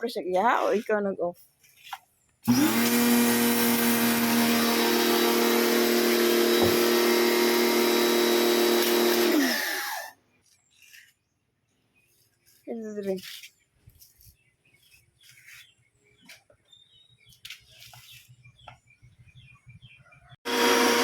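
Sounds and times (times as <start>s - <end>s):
pressure washer motor humming: 2.5s - 10.1s, 20.5s - 21.0s.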